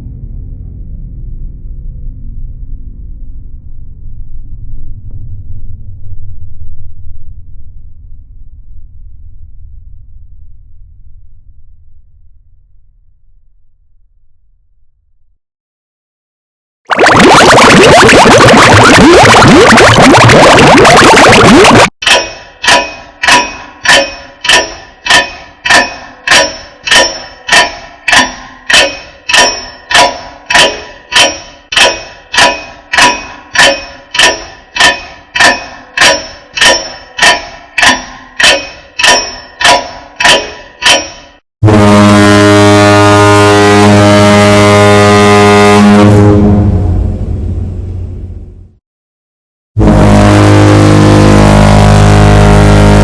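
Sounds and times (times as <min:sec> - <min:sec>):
loud steady horn-like tone: 0:17.0 - 0:21.9, 0:41.6 - 0:48.0, 0:49.8 - 0:53.0
ringing metallic clang: 0:22.0 - 0:41.4.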